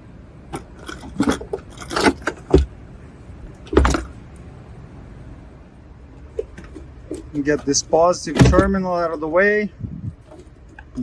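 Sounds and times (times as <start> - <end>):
car battery knocking into tray: 0.6 - 2.8, 3.4 - 4.2, 6.4 - 8.9.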